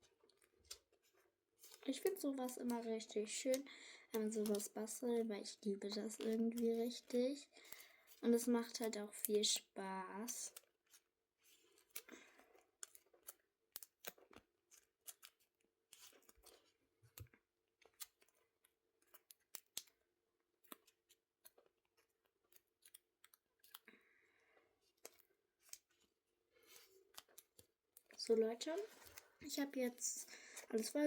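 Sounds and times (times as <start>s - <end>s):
tape and paper rustling: 0.7s - 3.6s, 4.2s - 9.6s, 10.2s - 17.3s.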